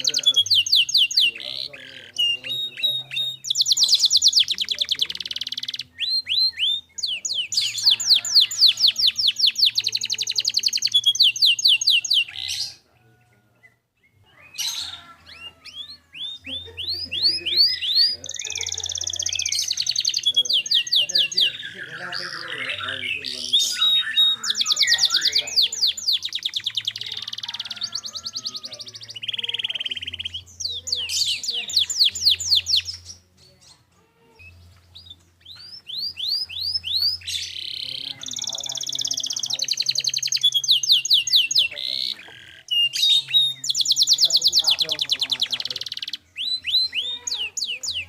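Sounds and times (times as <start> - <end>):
canary singing: 0.0 - 48.0.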